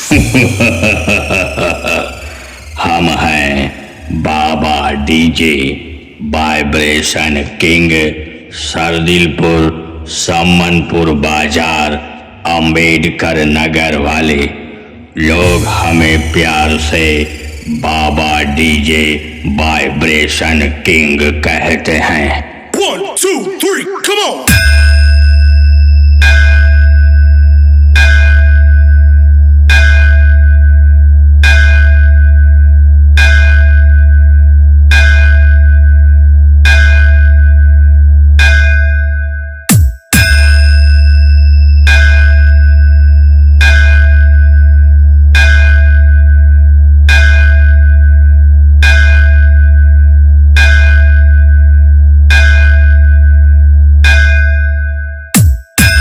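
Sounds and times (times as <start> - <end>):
bell-like chime ringing: 0.0 - 5.1, 14.7 - 20.9, 24.4 - 30.4, 38.4 - 46.1, 54.0 - 56.0
deep bass hum: 0.0 - 6.8, 14.5 - 21.5, 24.5 - 39.5, 40.2 - 55.0.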